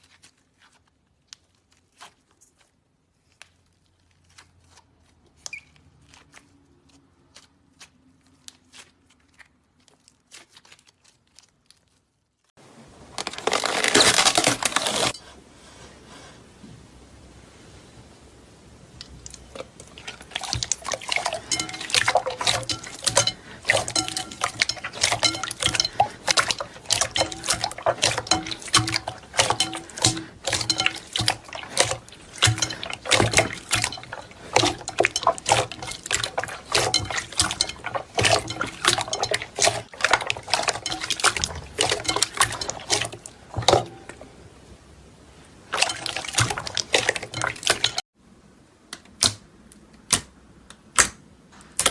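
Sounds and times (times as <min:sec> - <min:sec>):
slime squelching by hand: 0:00.0 - 0:12.4, 0:19.0 - 0:44.3, 0:45.6 - 0:48.0.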